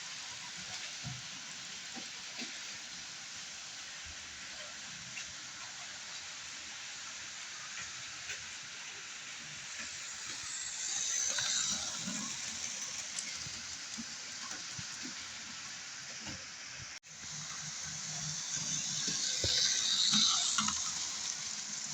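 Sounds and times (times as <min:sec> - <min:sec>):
model train running on track: 0:00.0 - 0:21.9
wheels clicking on rail joints: 0:09.7 - 0:15.6, 0:17.3 - 0:21.9.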